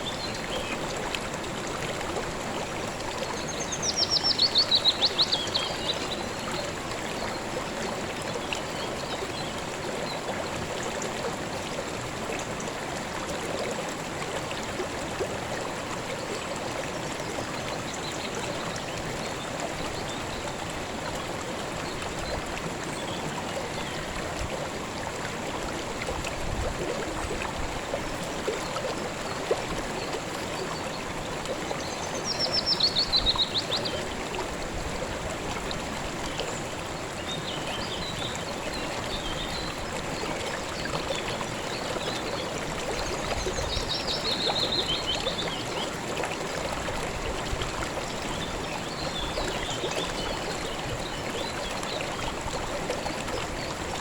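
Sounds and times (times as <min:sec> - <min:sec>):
river water flowing: 0:00.0 - 0:54.0.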